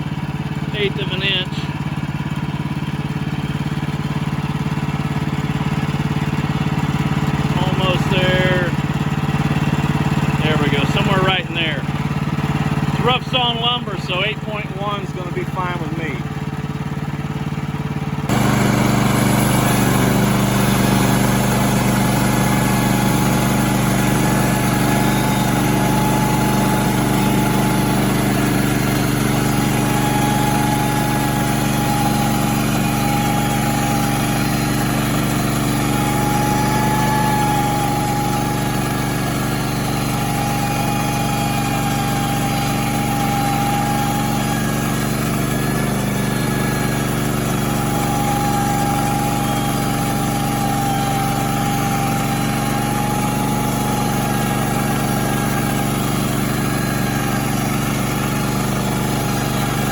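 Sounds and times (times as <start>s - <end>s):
saw cutting wood: 0.0s - 17.0s, 18.3s - 59.9s
small gasoline engine running: 0.0s - 59.9s.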